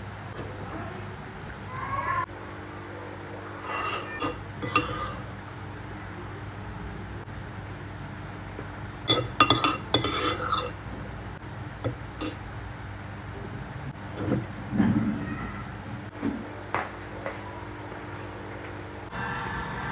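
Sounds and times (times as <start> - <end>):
steady low hum: 0.0 - 19.9.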